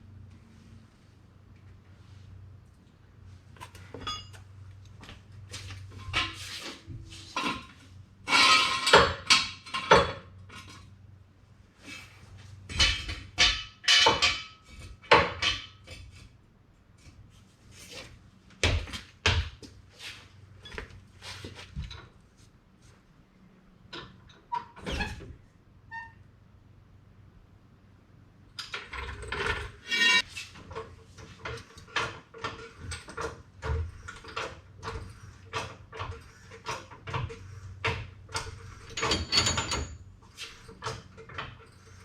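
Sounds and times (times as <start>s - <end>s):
metal parts clanking and rattling: 7.3s - 10.9s, 12.7s - 16.3s, 28.6s - 42.0s.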